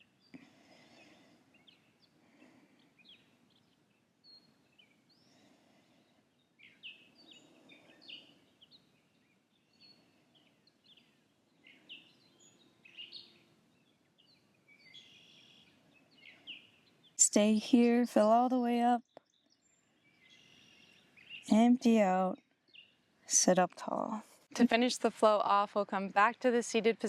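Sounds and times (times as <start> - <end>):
bird chirps: 6.6 - 17.5, 19.0 - 21.6.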